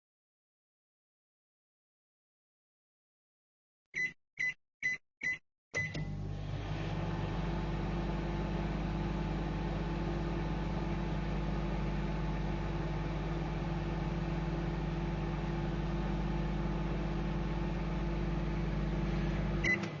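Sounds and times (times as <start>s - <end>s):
microwave oven humming: 5.8s - 20.0s.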